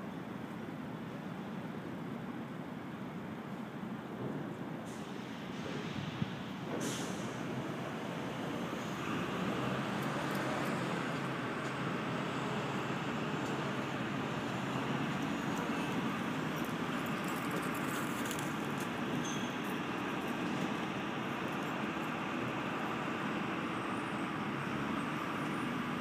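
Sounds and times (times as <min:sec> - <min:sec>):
road traffic rumble and hiss: 0:00.0 - 0:26.0.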